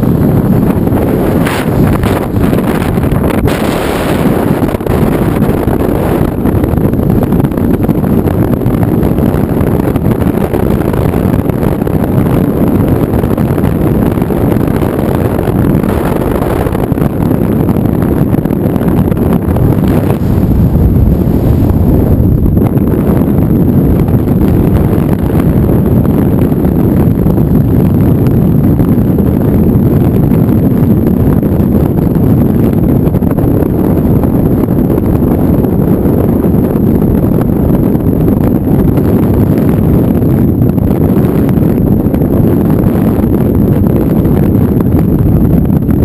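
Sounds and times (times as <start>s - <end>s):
car road noise: 0.0s - 27.8s
wind rumble on microphone: 0.0s - 46.0s.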